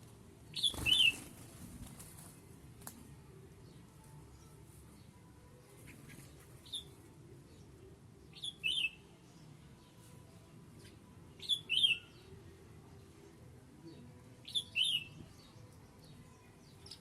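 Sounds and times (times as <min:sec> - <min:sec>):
bird chirping: 0:05.8 - 0:10.1, 0:10.8 - 0:12.3, 0:13.9 - 0:17.0.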